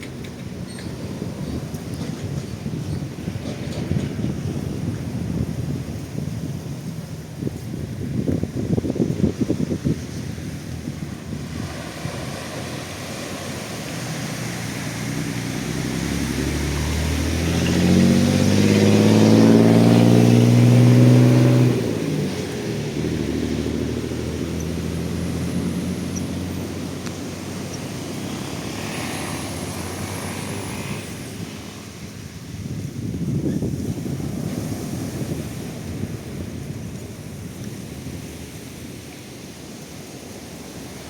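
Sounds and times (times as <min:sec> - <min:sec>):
surf: 0:00.0 - 0:41.0
wind noise: 0:00.0 - 0:41.0
vehicle engine accelerating past: 0:11.2 - 0:32.0.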